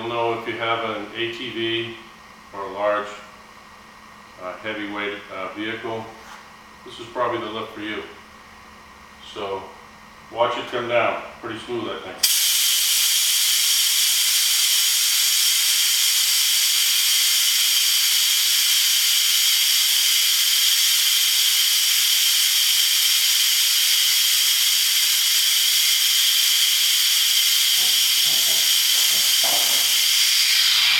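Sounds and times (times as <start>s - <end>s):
pneumatic lift hissing air: 12.2s - 30.9s.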